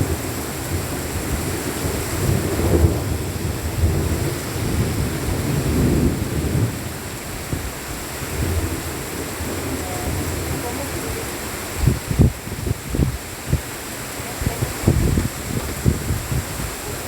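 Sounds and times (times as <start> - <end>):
steady rain: 0.0 - 17.0
thunder rumbling: 0.0 - 17.0.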